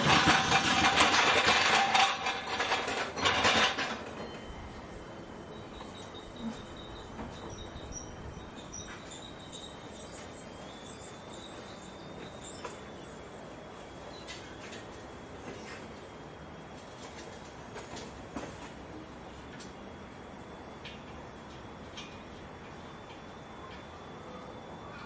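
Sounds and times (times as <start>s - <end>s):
metal clanking and rattling: 0.0s - 4.6s
rapid high-pitched chirping: 4.1s - 15.4s.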